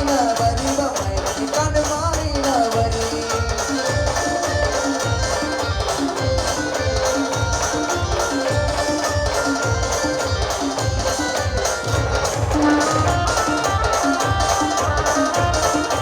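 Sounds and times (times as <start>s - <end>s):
folk band playing: 2.5s - 16.0s.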